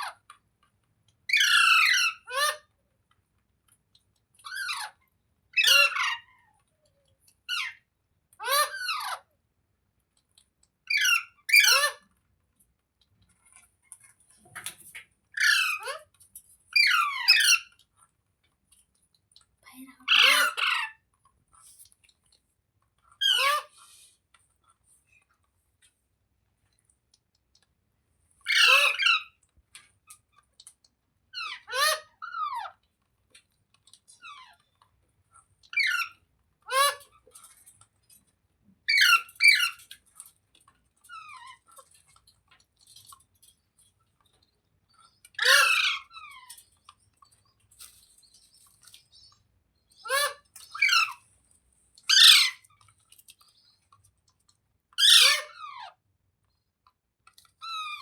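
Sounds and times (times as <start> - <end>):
parakeet shrill calls: 5.6 - 6.2, 28.5 - 29.3, 38.9 - 39.8, 45.4 - 46.5, 50.0 - 51.2, 52.1 - 52.6, 55.0 - 55.8.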